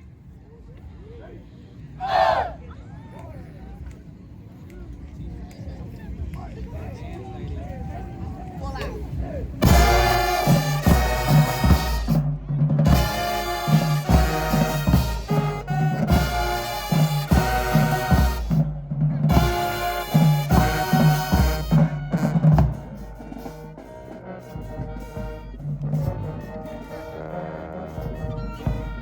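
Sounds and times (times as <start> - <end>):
bass drums and percussion: 9.1 - 27.2, 28.0 - 29.0
brass chords: 9.6 - 29.0.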